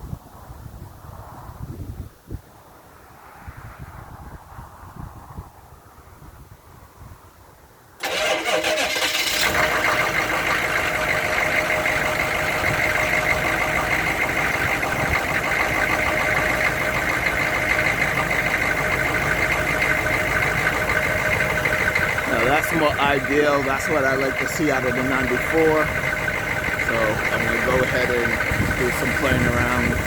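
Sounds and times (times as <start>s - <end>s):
diesel engine starting and idling: 8.0s - 30.0s.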